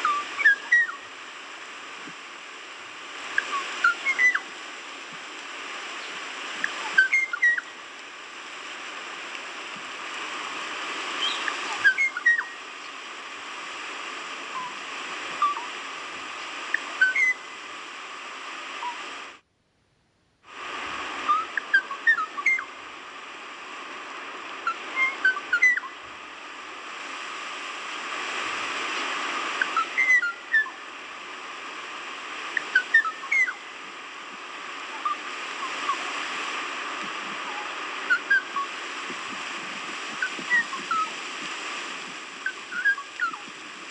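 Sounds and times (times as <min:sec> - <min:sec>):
bird whistling notes: 0:00.0 - 0:01.1, 0:03.4 - 0:04.5, 0:06.8 - 0:07.7, 0:11.2 - 0:12.6, 0:14.5 - 0:14.8, 0:15.4 - 0:15.7, 0:16.7 - 0:17.4, 0:21.3 - 0:22.7, 0:24.6 - 0:26.0, 0:29.6 - 0:30.8, 0:32.6 - 0:33.6, 0:34.9 - 0:36.0, 0:37.5 - 0:38.7, 0:40.2 - 0:41.1, 0:42.4 - 0:43.5
steady hiss: 0:00.0 - 0:43.9.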